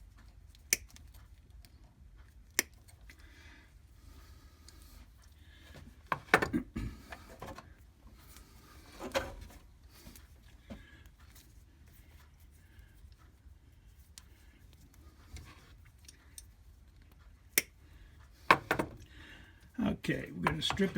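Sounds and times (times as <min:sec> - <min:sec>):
tools and wires clattering: 0:05.8 - 0:10.3, 0:20.4 - 0:20.9.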